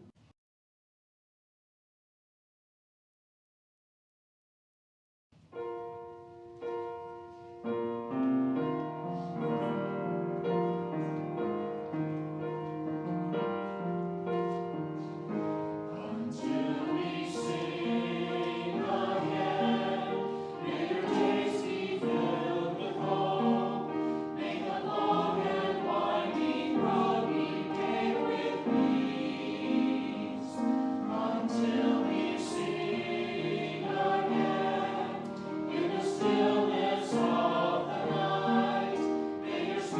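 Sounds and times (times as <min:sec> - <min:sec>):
choir singing sacred music: 0:14.5 - 0:39.9.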